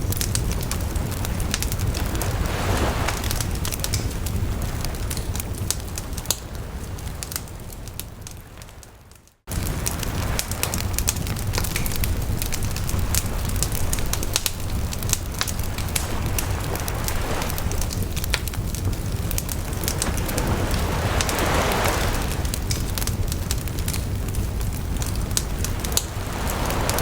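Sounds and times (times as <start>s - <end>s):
bonfire crackling and popping: 0.0s - 27.0s
wave washing on shore: 0.0s - 27.0s
low rumble: 9.5s - 27.0s.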